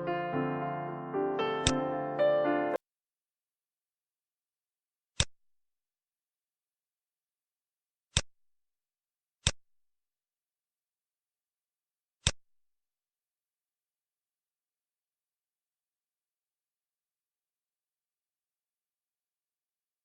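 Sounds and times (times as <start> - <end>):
short sharp clicks: 1.6 - 1.8.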